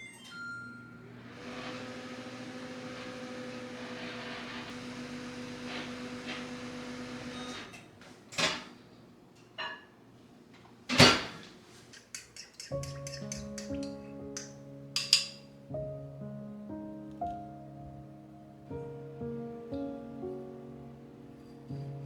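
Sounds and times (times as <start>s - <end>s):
electric appliance humming: 0.9s - 7.8s.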